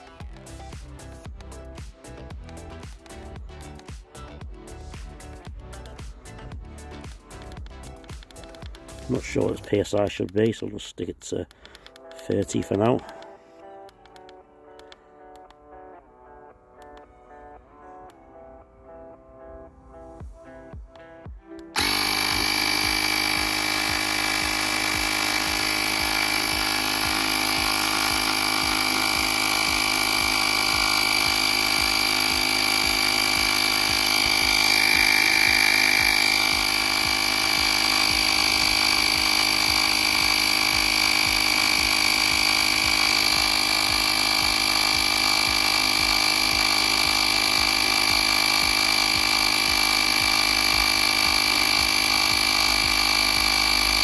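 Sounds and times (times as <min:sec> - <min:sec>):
air compressor whining: 0:21.7 - 0:54.0.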